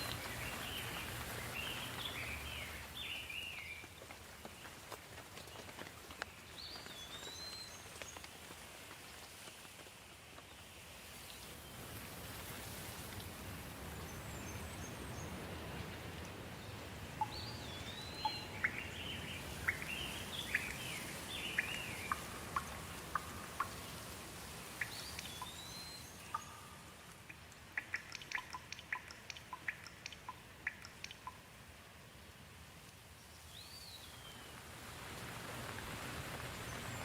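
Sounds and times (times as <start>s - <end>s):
songbird singing: 0.0s - 4.7s, 13.9s - 31.5s, 33.2s - 34.6s
steady rain: 0.0s - 37.0s
water drops falling: 17.2s - 31.6s.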